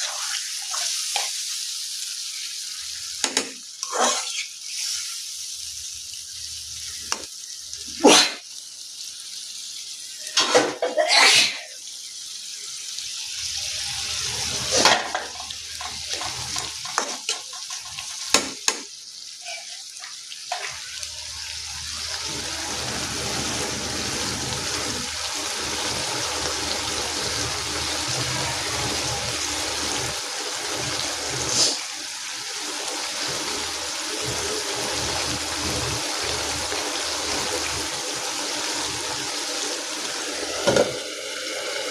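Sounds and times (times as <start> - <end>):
food sizzling in a pan: 0.0 - 41.9
spoon scraping a pan: 3.8 - 4.9.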